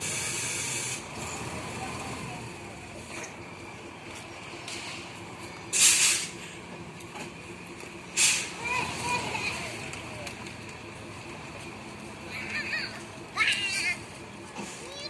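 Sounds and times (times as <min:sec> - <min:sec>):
air hiss bursts: 0:00.0 - 0:01.0, 0:05.7 - 0:06.4, 0:08.2 - 0:08.6
heavy diesel machinery running: 0:00.0 - 0:15.0.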